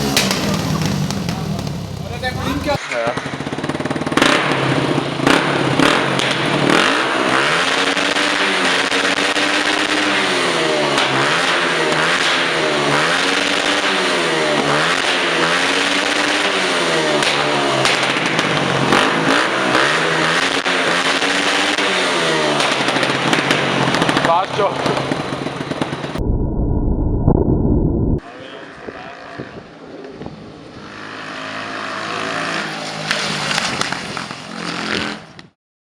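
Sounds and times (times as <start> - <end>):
exhaust pops and crackles: 0.0 - 2.8, 17.1 - 19.4, 22.5 - 26.2
loud muffled rumble: 0.0 - 2.8, 26.1 - 28.2
motorcycle engine running: 0.0 - 7.6
motorcycle engine revving: 0.0 - 26.2, 30.8 - 35.3.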